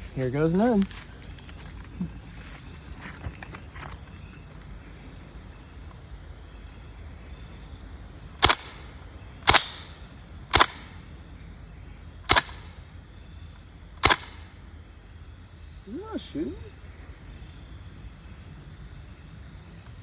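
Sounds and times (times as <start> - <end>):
bb gun shots: 8.4 - 11.0, 12.3 - 12.8, 14.0 - 14.5.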